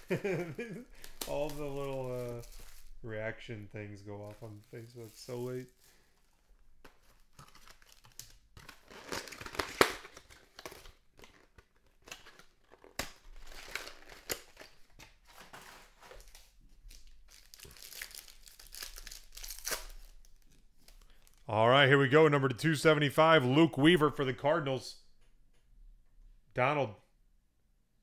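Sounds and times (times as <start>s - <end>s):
card packaging crinkling and tearing: 0.0s - 21.5s.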